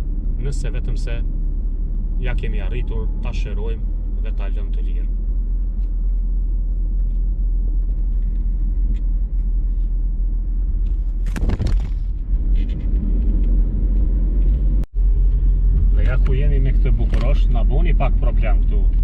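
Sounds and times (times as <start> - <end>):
vehicle engine rumbling: 0.0 - 19.0.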